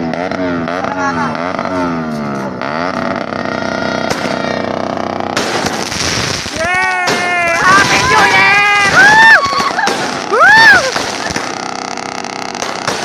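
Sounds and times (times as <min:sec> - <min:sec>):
firework shot hiss: 0:04.1 - 0:08.1, 0:09.1 - 0:13.0.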